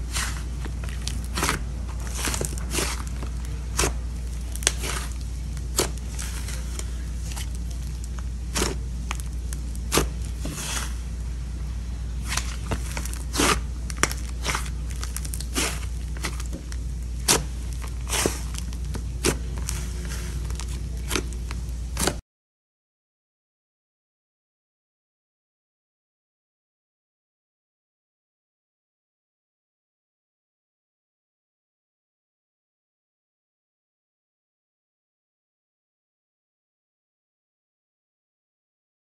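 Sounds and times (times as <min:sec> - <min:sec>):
slime squishing and popping: 0:00.0 - 0:11.1, 0:12.2 - 0:22.2
steady low hum: 0:00.0 - 0:22.2.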